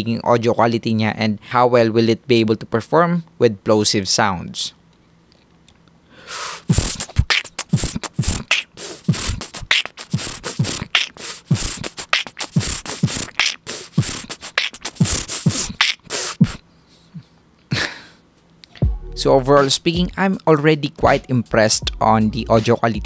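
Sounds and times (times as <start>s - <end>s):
beatboxing into a microphone: 6.4s - 17.3s, 18.8s - 23.0s.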